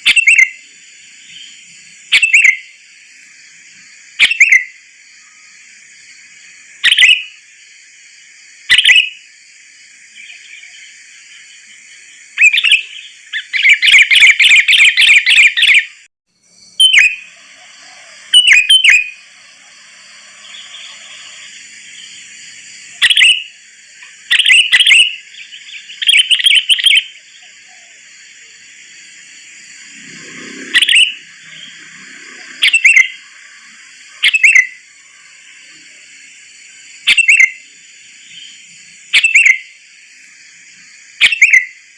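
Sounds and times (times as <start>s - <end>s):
bulbul singing: 0.0s - 2.8s, 4.2s - 5.5s, 6.8s - 7.4s, 10.1s - 28.2s, 29.8s - 39.8s, 41.1s - 41.8s
steady high hiss: 0.0s - 14.0s, 16.0s - 41.9s.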